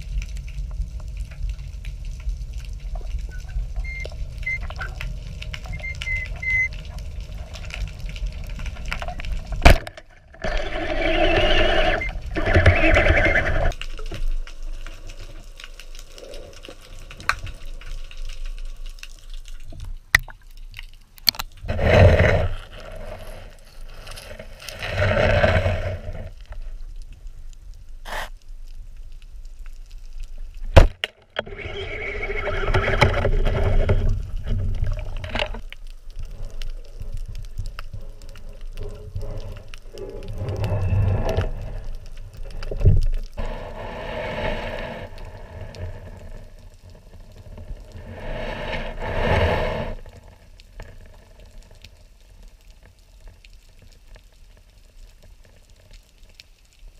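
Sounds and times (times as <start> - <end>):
water rushing and bubbling: 0.0 - 18.8, 30.6 - 51.3.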